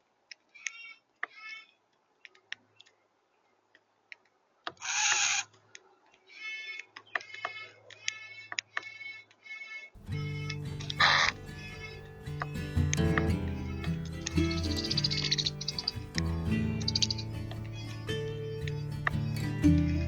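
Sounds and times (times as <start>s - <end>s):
birds calling at a feeder: 10.1s - 20.0s.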